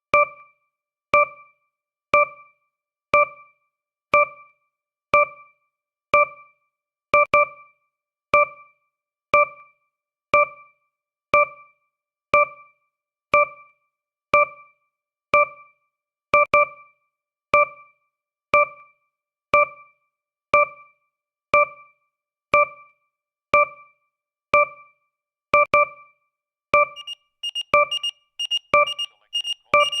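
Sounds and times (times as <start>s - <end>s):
fast alarm beeps: 26.8s - 30.0s
short pitched beeps: 26.8s - 30.0s.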